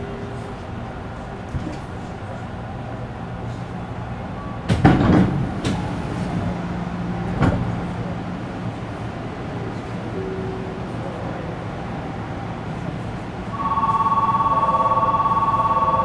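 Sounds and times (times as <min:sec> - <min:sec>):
wheels clunking over rail joints: 0:00.0 - 0:10.9
train wheels rumbling on rail: 0:00.0 - 0:13.7.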